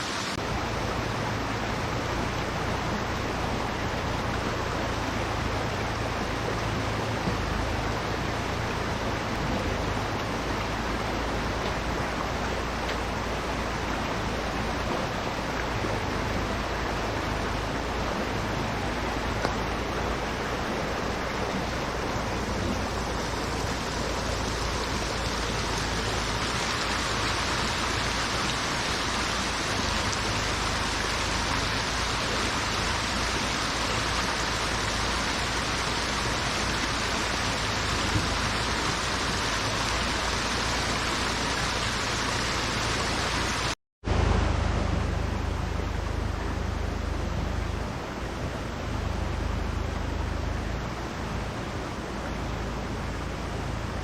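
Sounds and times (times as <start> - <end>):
water hissing: 21.7 - 43.8.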